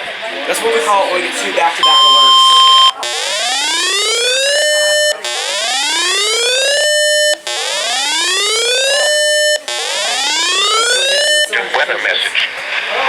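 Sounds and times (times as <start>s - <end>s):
rising whoop alert siren: 1.8s - 11.5s.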